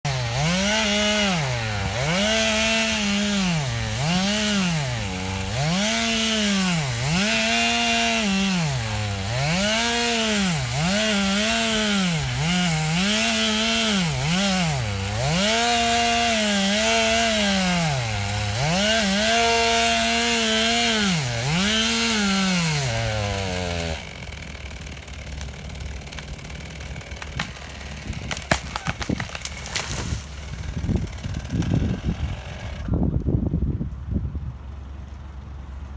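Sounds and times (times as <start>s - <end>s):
chainsaw running at high revs: 0.0s - 33.0s.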